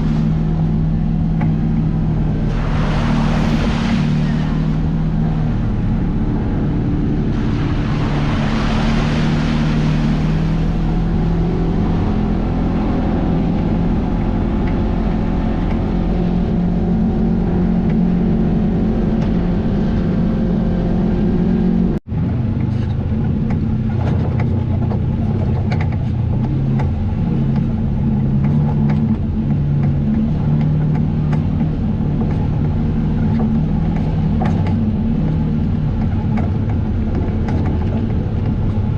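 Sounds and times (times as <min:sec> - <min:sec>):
wind noise rushing: 0:00.0 - 0:21.9
vehicle engine running: 0:00.0 - 0:38.9.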